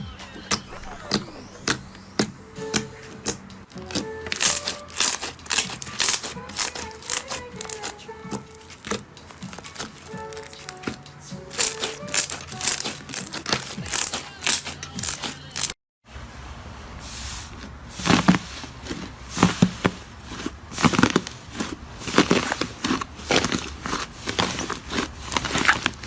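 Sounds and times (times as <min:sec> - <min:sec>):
slime squeezed crackling and popping: 0:04.4 - 0:07.9.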